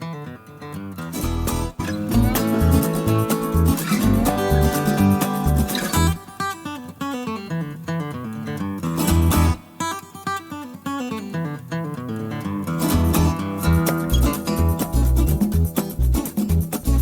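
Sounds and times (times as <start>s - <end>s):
acoustic guitar music: 0.0s - 17.0s.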